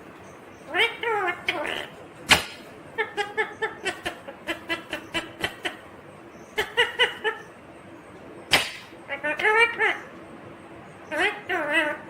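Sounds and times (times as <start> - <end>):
parakeet chattering: 0.5 - 7.5, 8.5 - 10.1, 11.0 - 12.0
sharp click: 2.3 - 2.6, 8.5 - 8.9.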